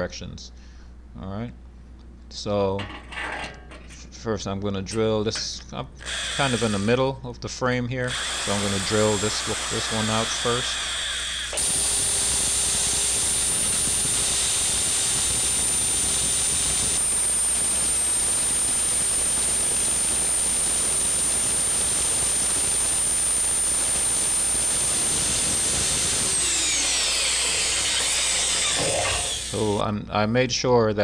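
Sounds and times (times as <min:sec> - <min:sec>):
hammer drill boring into concrete: 0:06.0 - 0:07.0, 0:08.1 - 0:29.8.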